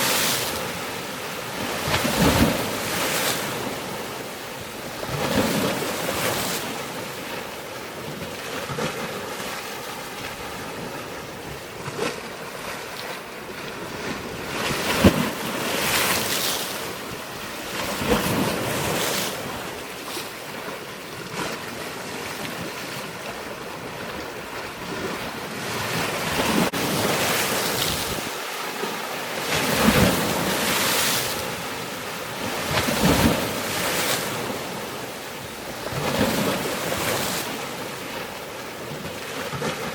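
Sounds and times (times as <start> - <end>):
waves surging and splashing: 0.0 - 39.9.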